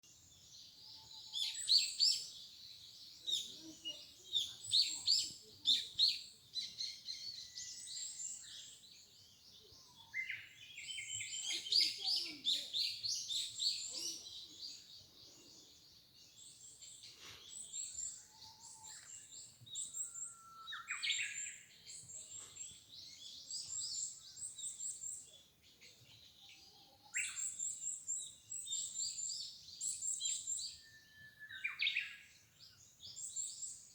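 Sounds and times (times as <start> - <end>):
forest birds chirping and singing: 0.0 - 33.9.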